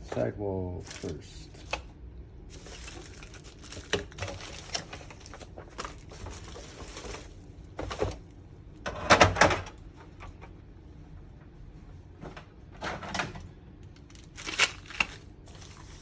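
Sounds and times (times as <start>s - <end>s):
plastic packaging crinkling: 0.8s - 1.9s, 2.5s - 8.2s, 13.9s - 16.0s.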